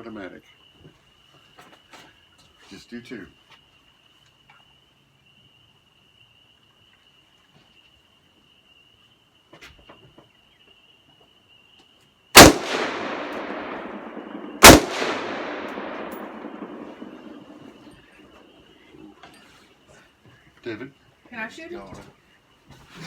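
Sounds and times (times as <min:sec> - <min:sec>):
insects chirping: 0:00.0 - 0:23.0
rifle shots with long echo: 0:12.4 - 0:17.9.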